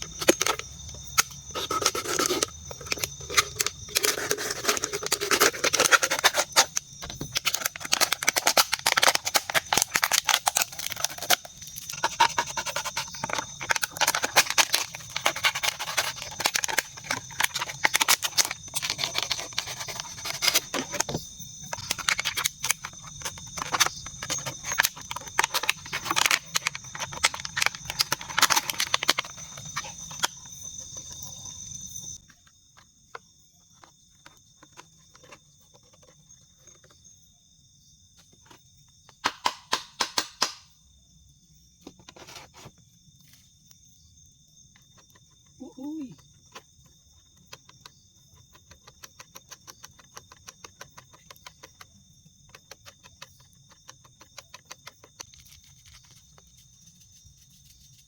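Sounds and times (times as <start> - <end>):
irregular crackling and clicking: 0.0 - 31.3, 46.2 - 58.0
night insects droning: 0.0 - 58.0.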